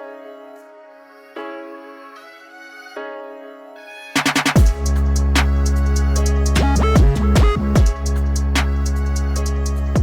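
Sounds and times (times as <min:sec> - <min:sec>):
deep bass note: 0:04.6 - 0:10.0
ticking electronic beat: 0:04.6 - 0:10.0.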